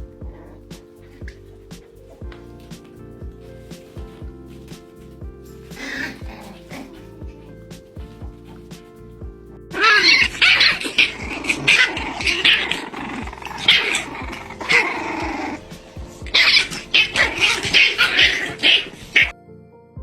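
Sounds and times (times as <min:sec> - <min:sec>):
faint background music: 0:00.0 - 0:20.0
puppies growling and yapping: 0:05.6 - 0:08.9, 0:09.7 - 0:19.3.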